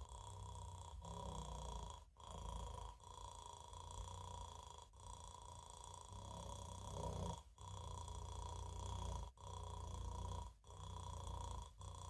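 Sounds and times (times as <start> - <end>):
faint low snoring: 0.0 - 12.0.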